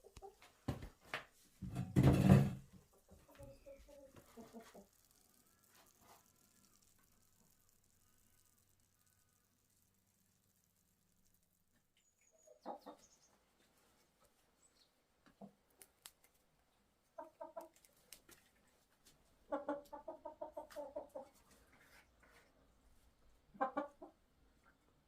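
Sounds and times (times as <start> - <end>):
chicken clucking: 0.0 - 0.5, 2.9 - 5.3, 12.0 - 13.4, 17.1 - 17.9, 19.4 - 21.6, 23.4 - 24.2.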